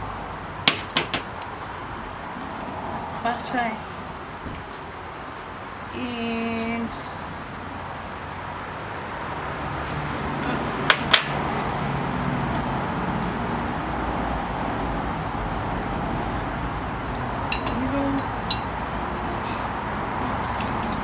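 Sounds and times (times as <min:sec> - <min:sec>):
traffic noise: 0:00.0 - 0:21.0
kitchenware clinking: 0:17.5 - 0:19.0.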